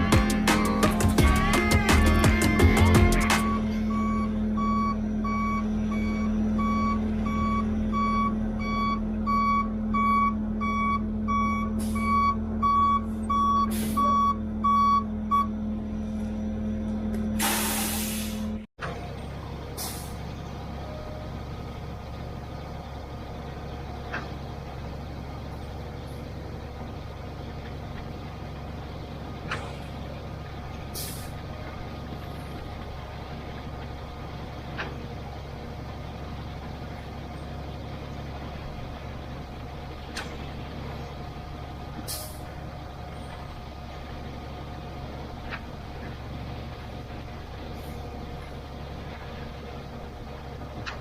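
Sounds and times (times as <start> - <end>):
concrete pump truck running: 0.0 - 51.0.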